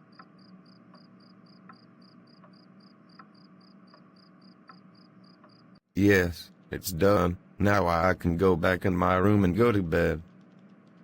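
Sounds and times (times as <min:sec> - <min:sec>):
crickets chirping: 0:00.2 - 0:05.8.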